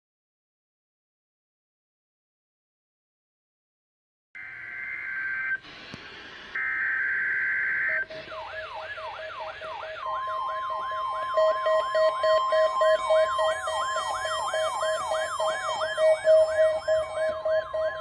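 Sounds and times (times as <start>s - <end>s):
electronic siren sweeping down: 4.4s - 5.6s, 6.6s - 18.0s
steady high alarm tone: 4.4s - 5.6s, 6.6s - 18.0s
low pulsing beep: 6.6s - 8.7s, 10.0s - 18.0s.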